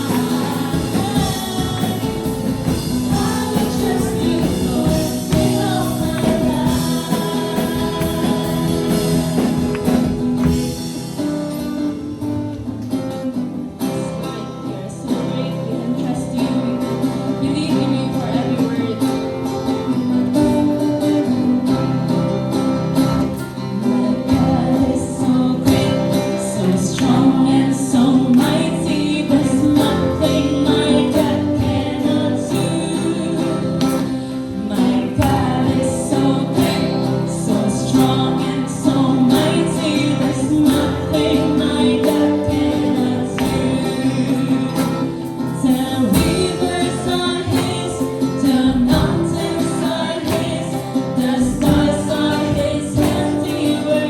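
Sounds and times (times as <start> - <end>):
people singing: 0.0 - 11.2, 23.0 - 54.0
gospel worship music: 0.0 - 54.0
guitar: 0.0 - 54.0.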